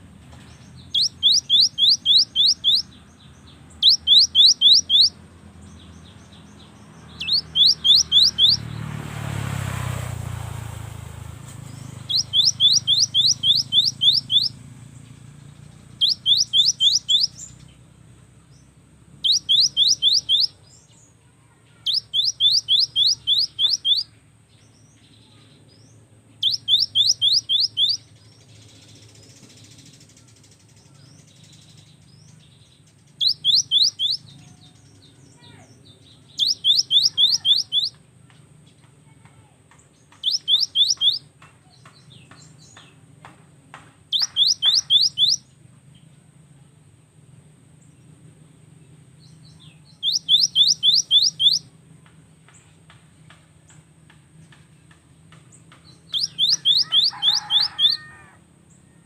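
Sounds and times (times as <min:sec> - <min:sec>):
bird singing whistled notes: 0:00.5 - 0:09.0, 0:11.6 - 0:17.8, 0:18.5 - 0:21.1, 0:21.8 - 0:38.0, 0:40.0 - 0:41.3, 0:44.1 - 0:45.6, 0:49.2 - 0:51.7, 0:55.5 - 0:58.2.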